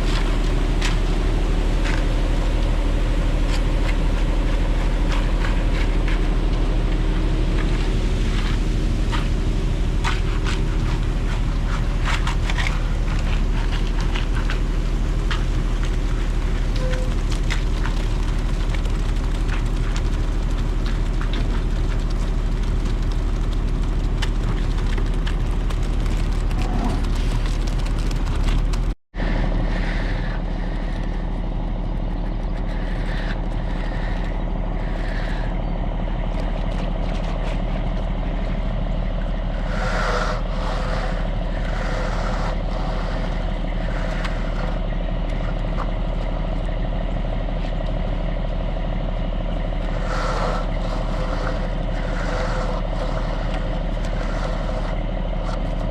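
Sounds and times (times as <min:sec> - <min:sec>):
heavy truck engine rumbling: 0:00.0 - 0:55.9.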